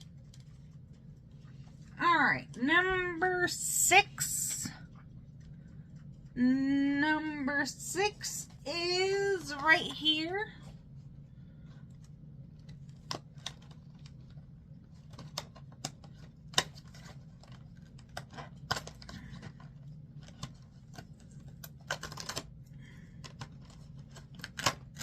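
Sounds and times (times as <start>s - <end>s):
low steady hum: 0.0s - 25.0s.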